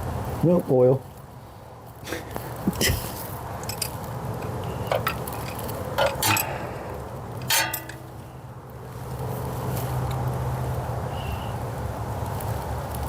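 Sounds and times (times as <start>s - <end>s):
wrench and bolts clinking on metal: 3.6s - 8.3s.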